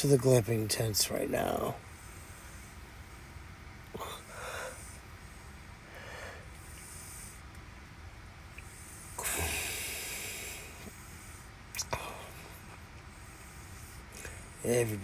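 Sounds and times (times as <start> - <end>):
woman snoring: 4.0 - 4.8, 9.2 - 10.9.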